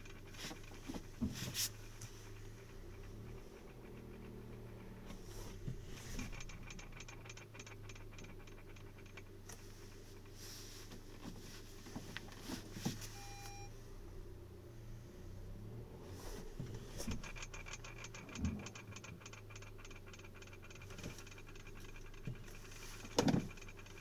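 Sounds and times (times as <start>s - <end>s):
sharp engine knocks: 0.0s - 10.4s, 16.3s - 24.0s
rapid ticking engine knock: 0.0s - 12.8s, 15.4s - 24.0s
car engine running: 0.0s - 24.0s
short electronic beep: 13.2s - 13.8s.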